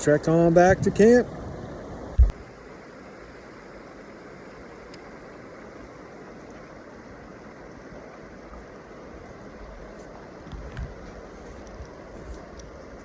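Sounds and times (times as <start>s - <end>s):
steady rushing noise: 0.0s - 2.4s
faint tick: 4.9s - 5.1s.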